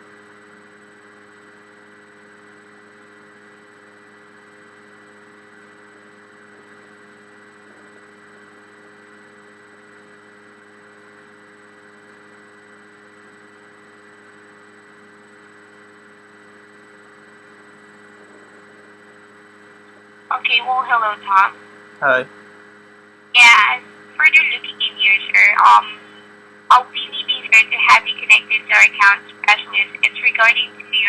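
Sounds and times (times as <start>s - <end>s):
phone line hum and hiss: 0.0s - 31.0s
steady tones: 23.4s - 31.0s.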